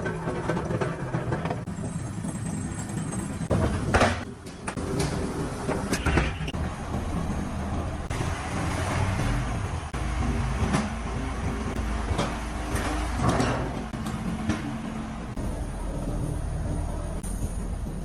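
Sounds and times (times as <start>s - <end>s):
factory machinery rumble: 0.0s - 18.0s
machinery clanks and knocks: 0.0s - 18.0s.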